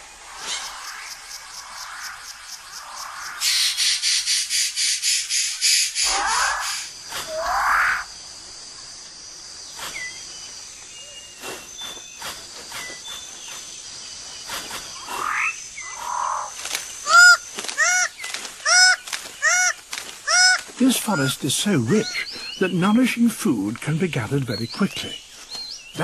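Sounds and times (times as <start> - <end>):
insect hum: 0.0 - 26.0
harsh sweeping animal calls: 0.2 - 8.2, 14.4 - 22.6
chirps and clicks: 8.9 - 26.0.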